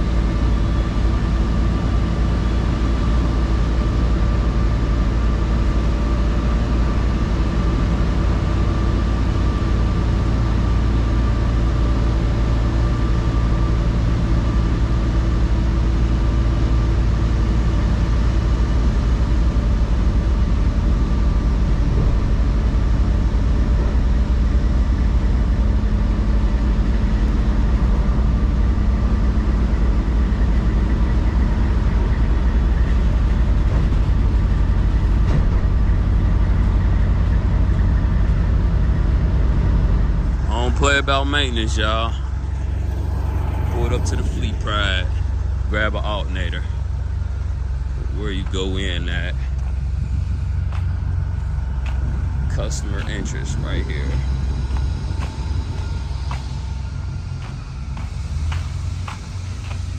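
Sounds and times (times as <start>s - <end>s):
truck diesel engine running: 35.9s - 59.9s.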